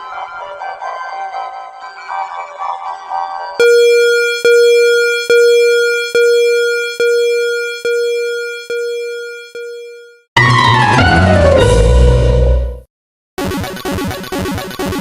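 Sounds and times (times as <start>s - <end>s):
synthesized alarm beeps: 3.6s - 12.5s
harsh noise with falling pitch: 3.6s - 12.8s.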